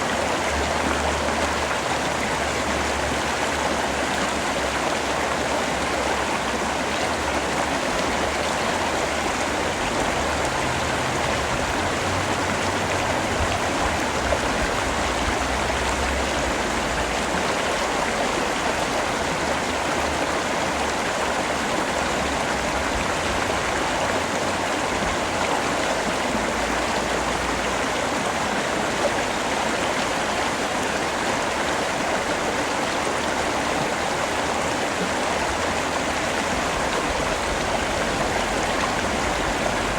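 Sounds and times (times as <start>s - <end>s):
steady rain falling: 3.8s - 31.6s.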